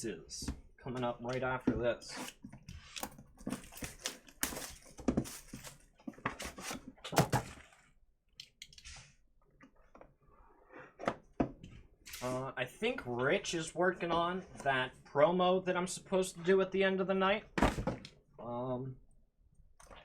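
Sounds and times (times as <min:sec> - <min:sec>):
plastic wrap and cardboard rustling: 0:02.0 - 0:07.9.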